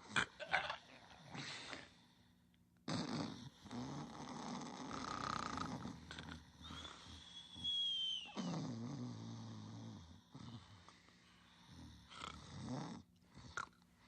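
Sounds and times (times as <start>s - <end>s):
person snoring: 2.9s - 7.6s, 8.4s - 11.0s, 11.6s - 13.8s
high whistle sliding downward: 6.8s - 8.4s.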